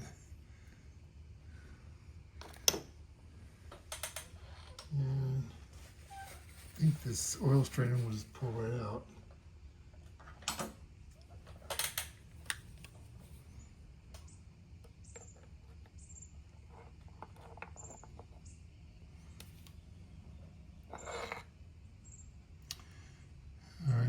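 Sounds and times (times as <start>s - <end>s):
faint high squeaks: 5.8s - 7.2s.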